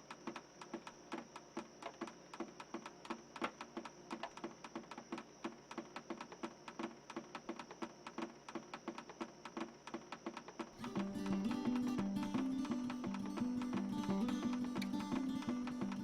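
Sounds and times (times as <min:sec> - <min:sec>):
instrumental music with plucked notes: 0:10.8 - 0:16.0.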